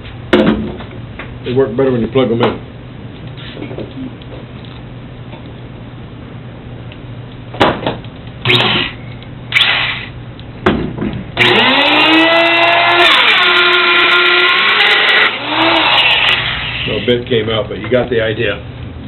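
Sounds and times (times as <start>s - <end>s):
electric router whining: 11.4s - 17.1s.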